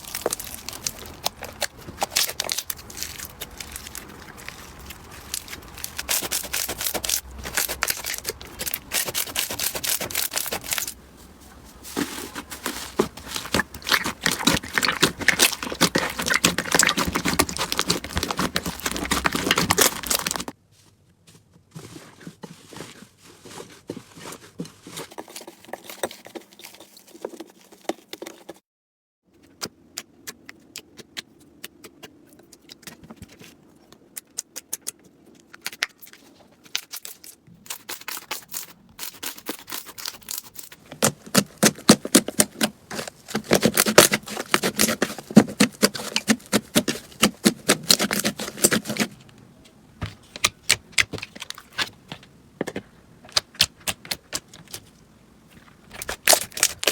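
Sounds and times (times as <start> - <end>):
slime crackling and popping: 0.0 - 11.0, 12.0 - 20.6.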